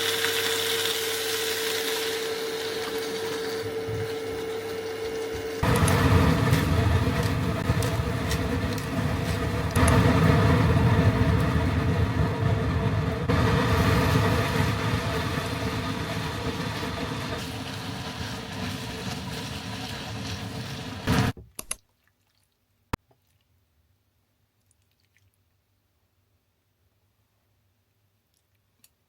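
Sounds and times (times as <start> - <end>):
appliance motor whirring hum: 0.0 - 6.0.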